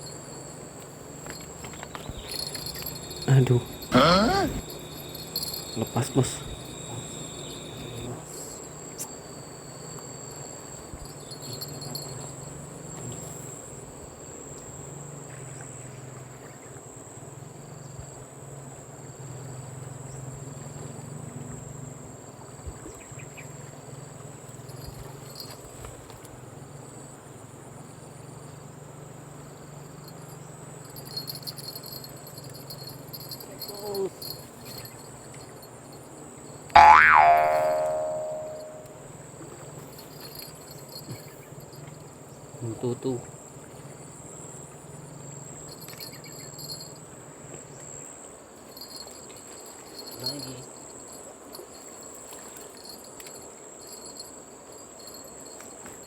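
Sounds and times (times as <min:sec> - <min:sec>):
low steady hum: 0:00.0 - 0:14.4, 0:36.8 - 0:39.0
insect pulsing chirp: 0:00.0 - 0:16.0, 0:30.8 - 0:35.6, 0:36.8 - 0:39.0
insects trilling: 0:00.0 - 0:16.7, 0:29.4 - 0:38.9, 0:39.5 - 0:56.0.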